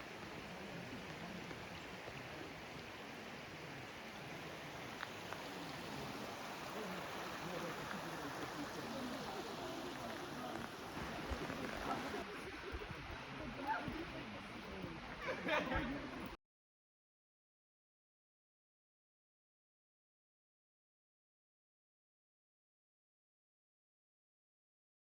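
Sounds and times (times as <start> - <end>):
faint voices: 0.0 - 16.4.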